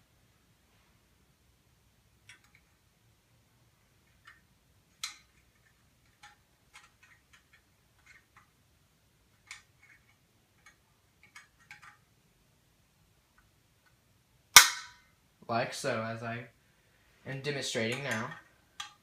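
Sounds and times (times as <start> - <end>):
clicks of trumpet parts handled: 4.2 - 8.5, 9.4 - 12.0, 17.8 - 19.0.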